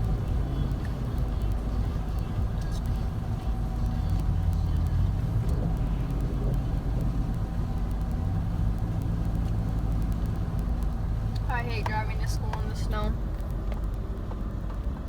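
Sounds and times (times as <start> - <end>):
car engine and tyres rumbling: 0.0 - 15.0.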